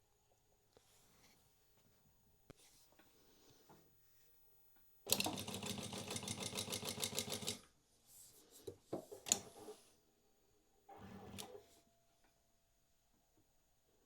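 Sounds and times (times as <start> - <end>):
sewing machine stitching: 5.1 - 7.6, 10.9 - 11.7.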